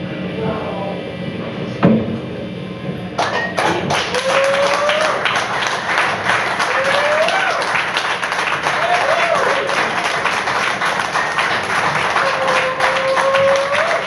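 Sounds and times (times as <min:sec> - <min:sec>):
audience applause: 0:03.2 - 0:14.0
audience whoops: 0:03.9 - 0:05.5, 0:06.4 - 0:10.3, 0:11.8 - 0:14.0.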